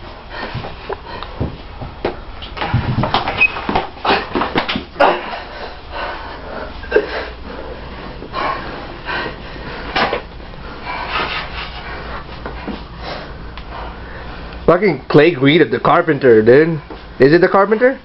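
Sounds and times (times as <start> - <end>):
heavy strained breathing: 5.0 - 14.6.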